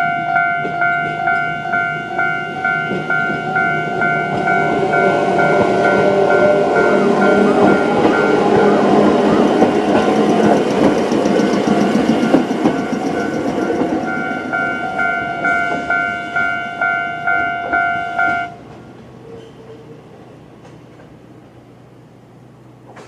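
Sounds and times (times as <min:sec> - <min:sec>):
electronic crossing bell ringing: 0:00.0 - 0:06.1, 0:09.7 - 0:18.5
train wheels rolling with knocks: 0:02.6 - 0:16.5.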